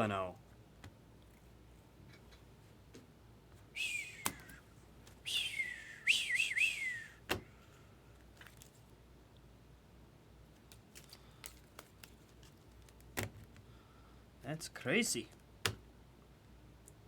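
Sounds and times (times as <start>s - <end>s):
person whistling: 3.8s - 4.6s, 5.2s - 7.2s.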